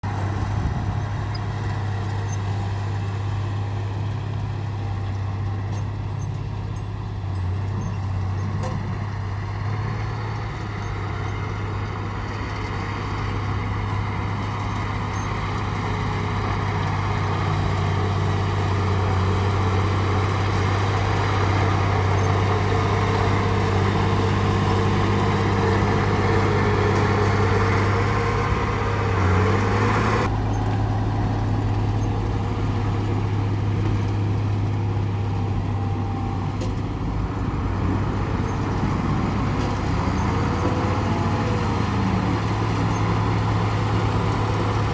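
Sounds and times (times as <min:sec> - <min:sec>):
dump truck engines running: 0:00.0 - 0:44.9.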